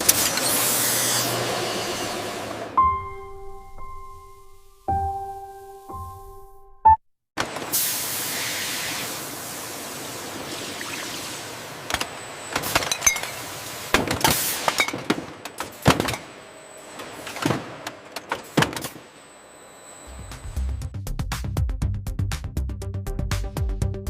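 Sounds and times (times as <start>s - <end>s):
loud hiss of air or steam: 7.7s - 10.2s.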